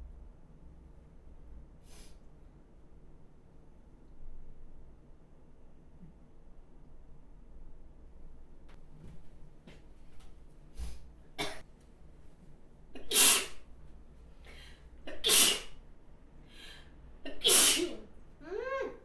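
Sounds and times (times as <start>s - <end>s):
person sneezing: 13.0s - 13.6s, 14.5s - 15.7s, 17.3s - 18.1s
person breathing: 14.4s - 15.0s, 16.4s - 17.0s.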